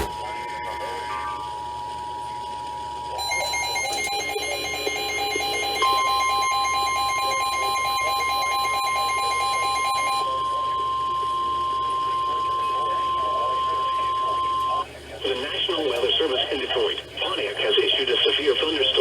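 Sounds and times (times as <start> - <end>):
steady single-pitch alarm tone: 0.0 - 14.8
rapid pulsing beeps: 1.4 - 14.9.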